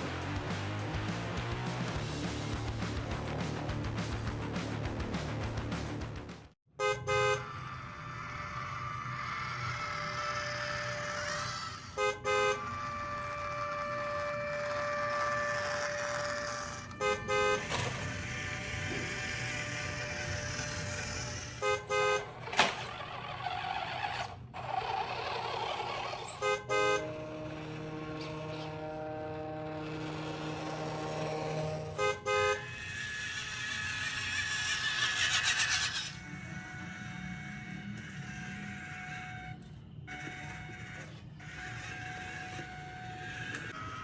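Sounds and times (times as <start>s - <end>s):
engine-like drone: 0.0s - 44.0s
double horn toots: 6.8s - 23.4s, 26.0s - 44.0s.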